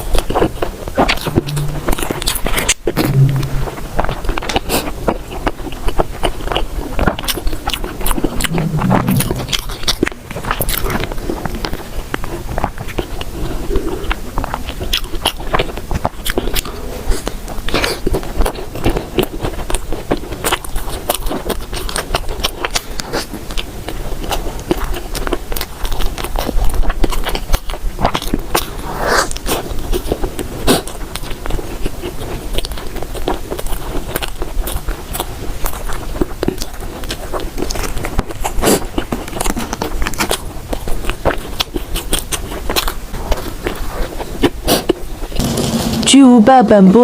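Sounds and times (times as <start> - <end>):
person chewing bread: 0.0 - 3.0, 3.8 - 45.4
small crackles and rustles: 9.6 - 45.4.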